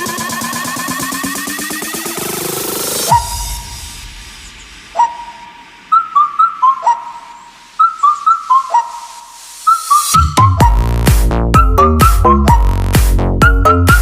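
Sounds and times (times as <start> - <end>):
whistled tune: 3.0 - 3.8, 4.9 - 14.0.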